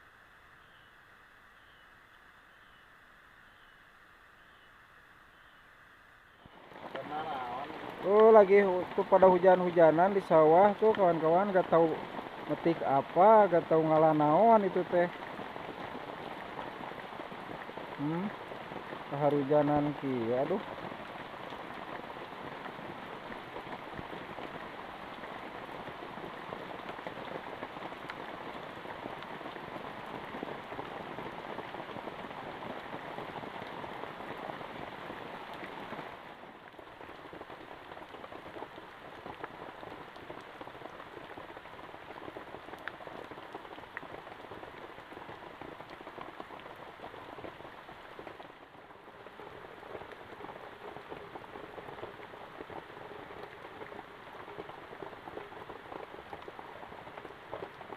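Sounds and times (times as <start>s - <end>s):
heavy rain falling: 6.4s - 57.9s.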